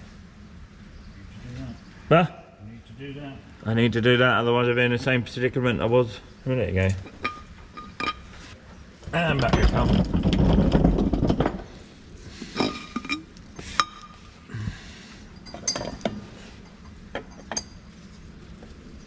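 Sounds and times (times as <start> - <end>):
metal tools clinking: 6.9 - 8.4, 15.4 - 18.2.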